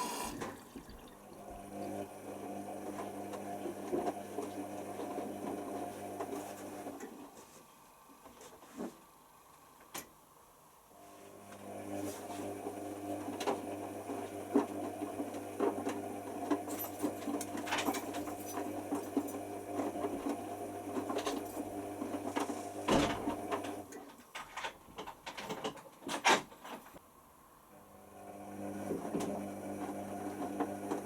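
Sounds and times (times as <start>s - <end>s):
washing machine motor hum: 0.0s - 6.9s.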